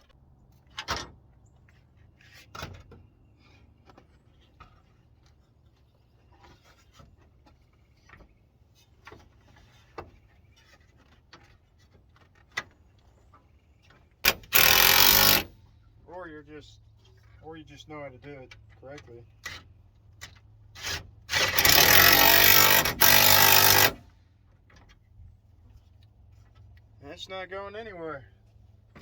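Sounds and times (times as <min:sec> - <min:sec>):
tools and parts clicking: 0:14.2 - 0:15.6
loud rough scraping rub: 0:20.8 - 0:24.0.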